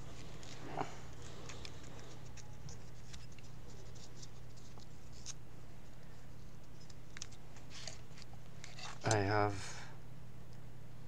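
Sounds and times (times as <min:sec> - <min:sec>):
steady low hum: 0:00.0 - 0:11.0
hands handling cable: 0:06.4 - 0:09.3.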